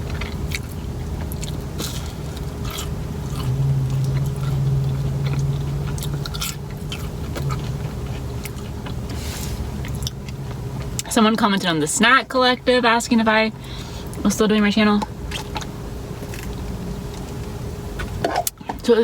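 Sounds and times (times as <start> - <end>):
chewing fried food: 0.0 - 11.7, 15.3 - 18.6
low steady hum: 0.0 - 19.0.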